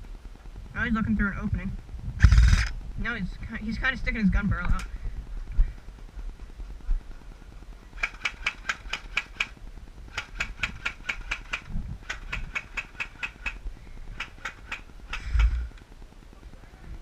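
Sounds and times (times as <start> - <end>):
airsoft gun firing full-auto: 8.0 - 13.6.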